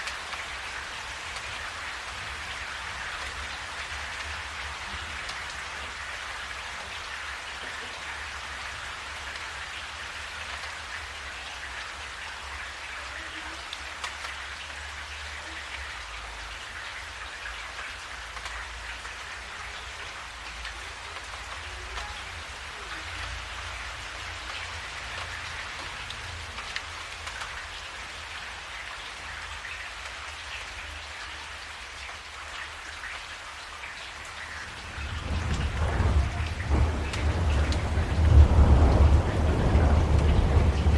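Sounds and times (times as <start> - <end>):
steady rain falling: 0.0 - 40.9
low rumble: 34.7 - 40.9.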